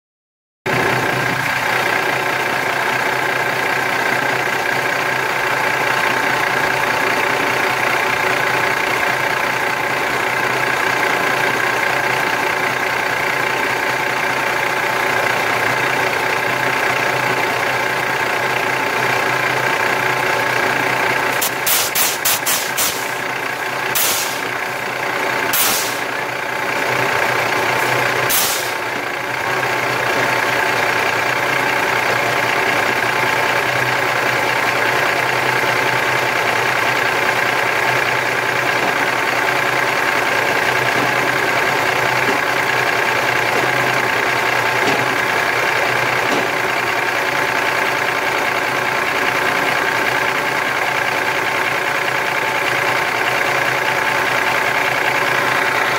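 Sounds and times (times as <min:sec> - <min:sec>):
truck diesel engine idling: 0:00.7 - 0:55.9
short air hisses: 0:21.4 - 0:23.2, 0:24.0 - 0:24.4, 0:25.6 - 0:26.1, 0:28.3 - 0:28.8.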